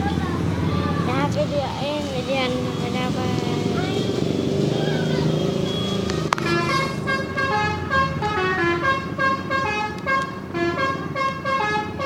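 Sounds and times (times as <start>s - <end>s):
multi-tone bus horn tune: 5.6s - 12.0s.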